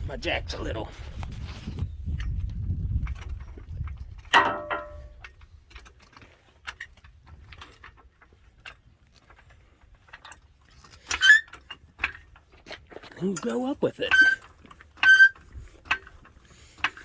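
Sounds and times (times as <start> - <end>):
metal clank ringing: 4.3 - 5.2.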